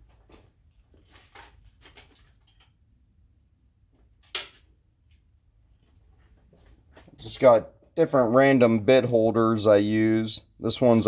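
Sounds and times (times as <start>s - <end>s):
tools rustling and clicking: 0.0s - 2.8s.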